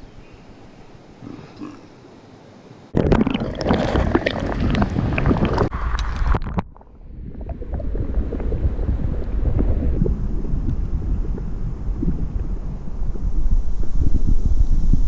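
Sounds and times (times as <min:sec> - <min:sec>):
water splashing and gurgling: 0:03.0 - 0:13.1.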